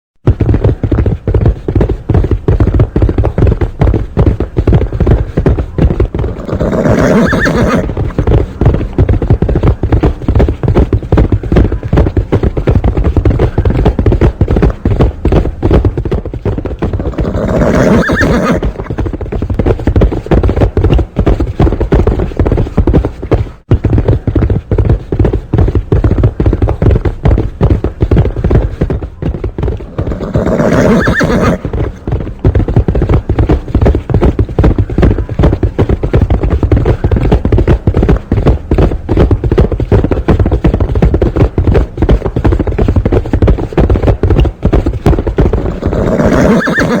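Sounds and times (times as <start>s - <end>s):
horse hoofbeats galloping: 0.2s - 47.0s
horse whinnying: 6.2s - 9.1s, 16.9s - 19.1s, 29.8s - 32.1s, 45.6s - 47.0s.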